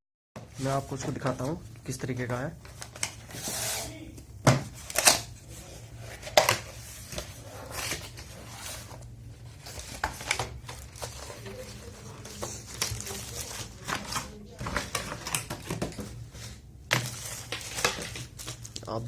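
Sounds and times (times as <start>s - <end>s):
packaging rustling: 4.7s - 19.0s.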